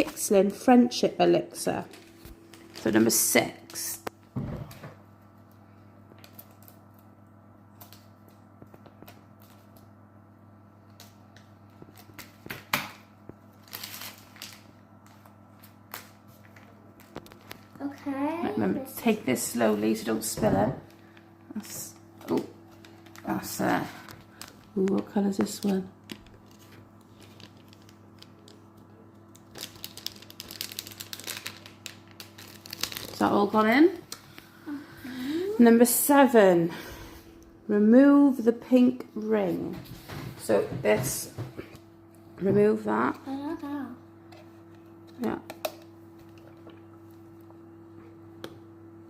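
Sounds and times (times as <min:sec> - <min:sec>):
crinkling: 0:13.4 - 0:17.8, 0:22.2 - 0:34.2.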